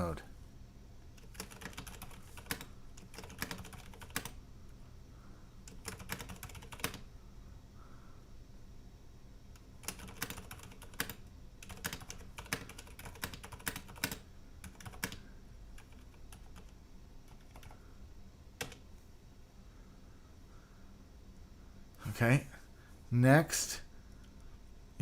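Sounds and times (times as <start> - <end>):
mechanical keyboard typing: 1.2 - 4.4, 5.7 - 7.0, 9.8 - 15.2, 15.8 - 17.8.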